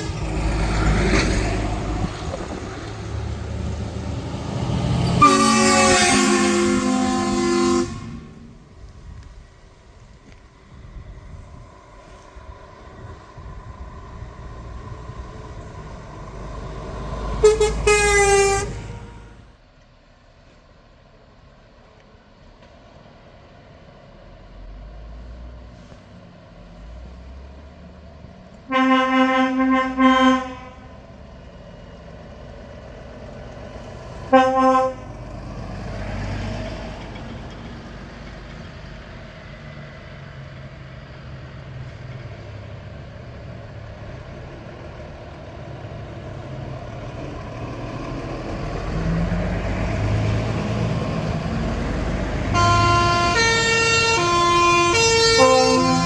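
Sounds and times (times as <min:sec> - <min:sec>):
truck engine noise: 0:00.0 - 0:20.2, 0:20.8 - 0:56.0
truck air horn: 0:05.0 - 0:08.7, 0:17.2 - 0:19.5, 0:28.7 - 0:31.0, 0:34.3 - 0:35.2, 0:52.3 - 0:56.0
multi-tone musical horn tune: 0:05.2 - 0:08.6, 0:17.4 - 0:19.5, 0:28.7 - 0:30.9, 0:34.3 - 0:35.1, 0:52.4 - 0:56.0.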